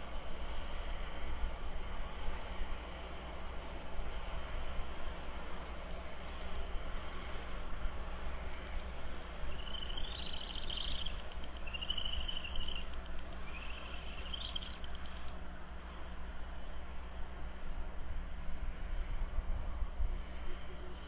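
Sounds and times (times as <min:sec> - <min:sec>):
low background noise: 0:00.0 - 0:21.0
small animal trilling calls: 0:09.5 - 0:14.8.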